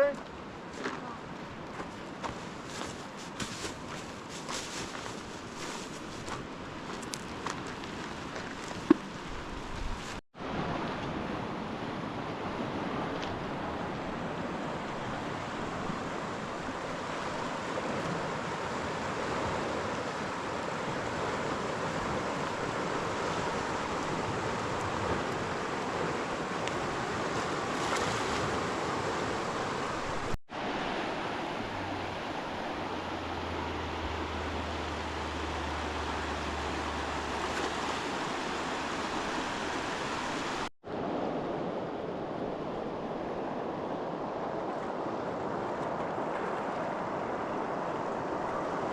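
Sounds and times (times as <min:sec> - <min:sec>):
river water rushing: 0:06.1 - 0:48.9.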